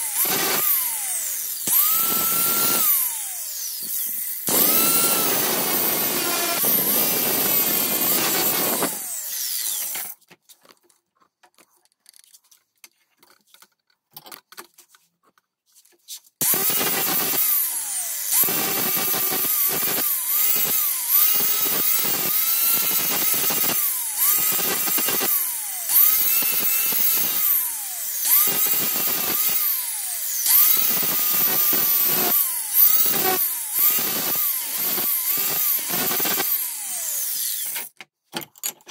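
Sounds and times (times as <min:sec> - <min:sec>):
power tool motor whine: 0:00.0 - 0:10.2, 0:16.4 - 0:37.9.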